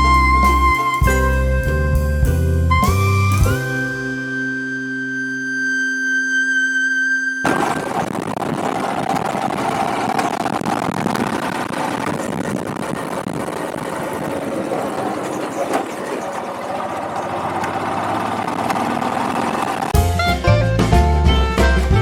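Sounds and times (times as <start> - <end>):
road noise: 0.0 - 22.0
motorcycle engine running: 11.2 - 22.0.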